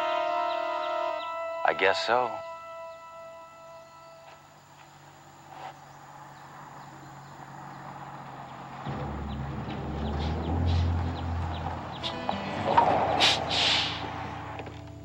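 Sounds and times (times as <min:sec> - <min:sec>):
vehicle engine rumble: 0:04.3 - 0:15.0
short high chirps: 0:12.0 - 0:12.5.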